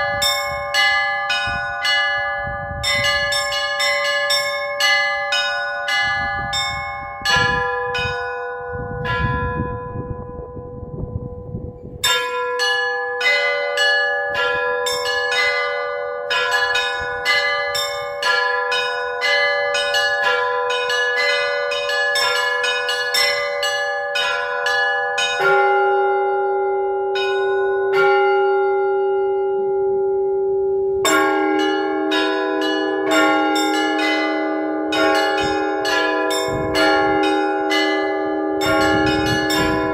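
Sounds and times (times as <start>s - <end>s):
low church bells: 0.0s - 39.9s
middle bells ringing: 0.0s - 39.9s
small church bells rapid strikes: 0.0s - 39.9s.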